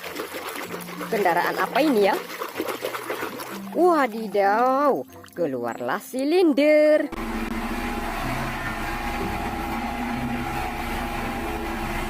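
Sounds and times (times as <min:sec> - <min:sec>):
engine running with hiss: 0:07.2 - 0:12.0.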